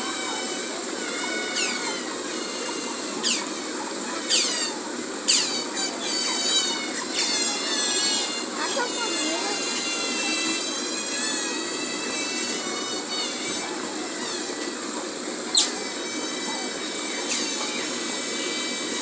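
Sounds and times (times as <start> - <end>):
otter chirping: 1.5 - 3.6, 4.2 - 11.5, 15.5 - 15.9.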